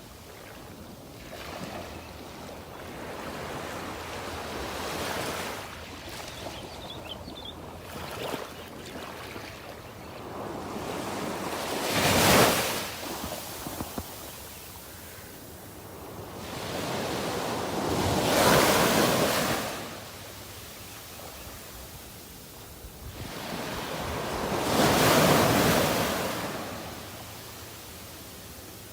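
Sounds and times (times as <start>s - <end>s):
surf hiss: 9.7s - 28.9s
ocean waves breaking: 23.2s - 28.6s.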